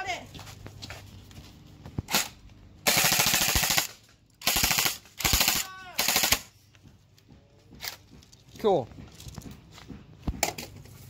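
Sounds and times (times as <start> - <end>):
airsoft gun firing bursts: 2.1 - 6.5.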